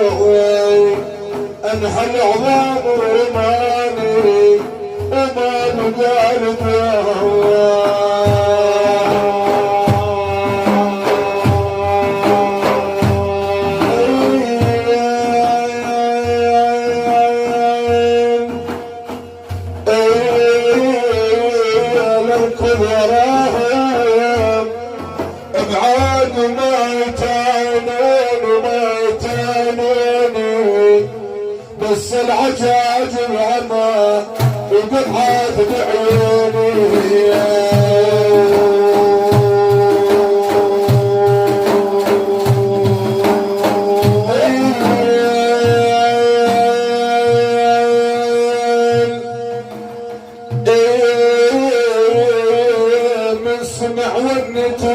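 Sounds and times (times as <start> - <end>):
ornamented devotional melody: 0.0 - 54.9
slow drum beat: 0.0 - 54.9.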